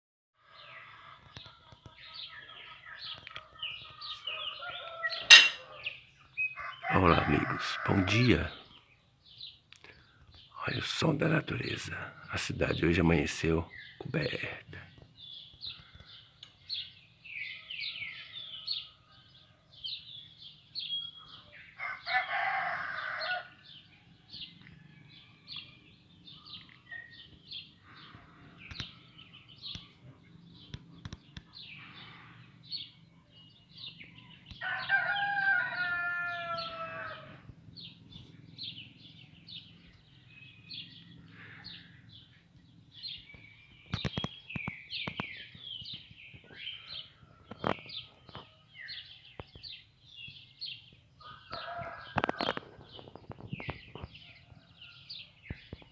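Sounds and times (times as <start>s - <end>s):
small birds chirping: 0.4s - 55.9s
rooster crowing: 4.2s - 5.8s, 6.6s - 8.5s, 21.8s - 23.6s, 34.6s - 37.5s.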